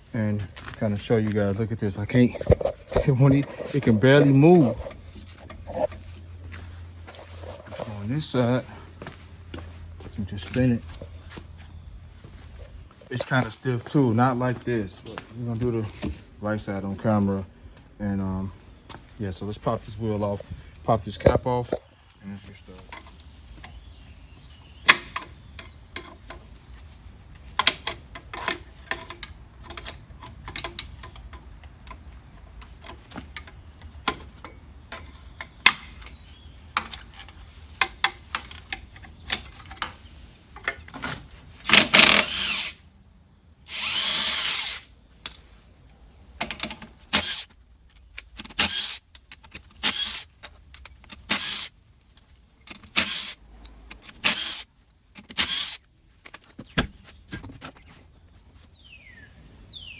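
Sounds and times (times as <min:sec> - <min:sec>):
impact wrench bursts: 0:41.6 - 0:42.8, 0:43.7 - 0:45.4, 0:46.5 - 0:47.5, 0:48.3 - 0:51.8, 0:52.7 - 0:55.9
hand tools clicking and knocking: 0:41.7 - 0:42.7, 0:46.4 - 0:56.5.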